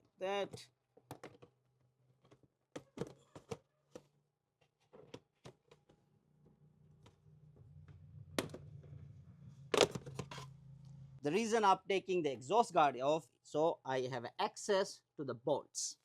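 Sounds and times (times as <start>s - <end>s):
low steady hum: 6.9s - 11.3s.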